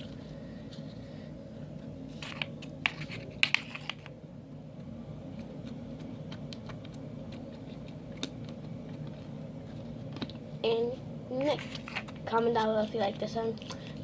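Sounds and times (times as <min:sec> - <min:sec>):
steady low hum: 0:00.0 - 0:14.0
slime squishing with crackles: 0:04.8 - 0:14.0.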